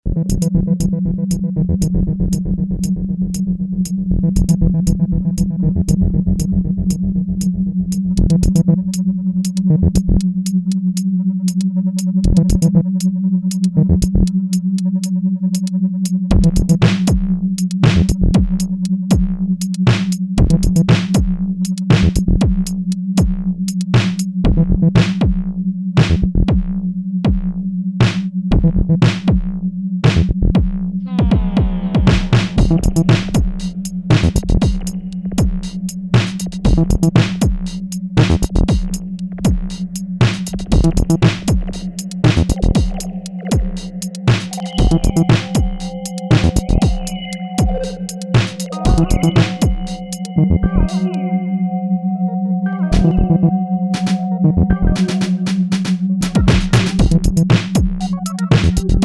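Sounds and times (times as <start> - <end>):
low synthesizer drone: 0.0 - 10.4, 30.8 - 59.0
drum-machine beats: 7.9 - 8.7, 11.5 - 14.6, 15.6 - 51.2, 52.9 - 59.0
deep kick drum: 16.3 - 23.6, 24.4 - 48.1, 48.8 - 50.8, 56.2 - 59.0.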